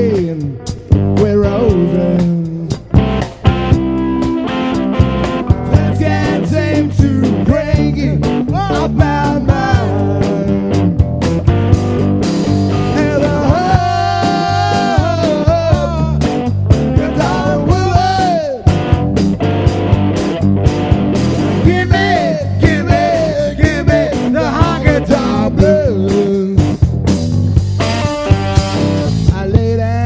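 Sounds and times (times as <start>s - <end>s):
rock band playing: 0.0s - 30.0s
bending lead melody: 0.9s - 29.4s.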